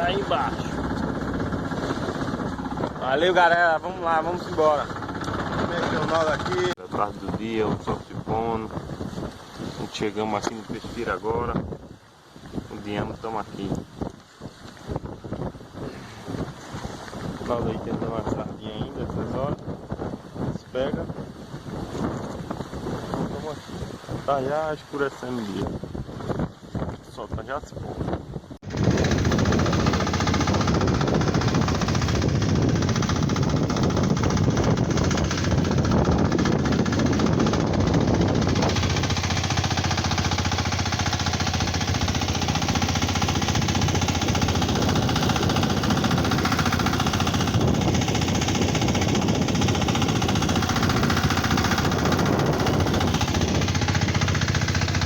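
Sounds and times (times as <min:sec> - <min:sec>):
boat engine knocking: 0:00.0 - 0:06.8, 0:28.6 - 0:55.0.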